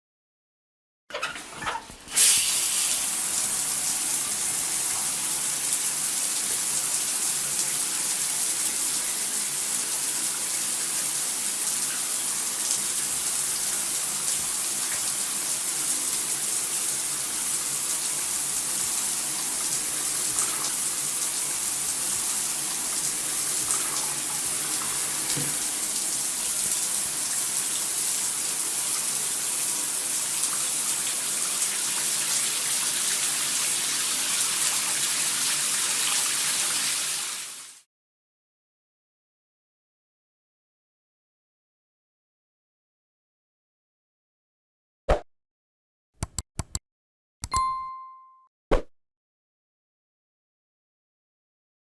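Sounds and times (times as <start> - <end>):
shower spray running: 2.1 - 37.8.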